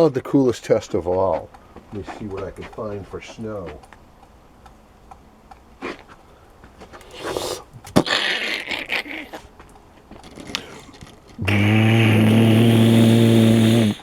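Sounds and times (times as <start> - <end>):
rustling and scraping: 0.5 - 11.5.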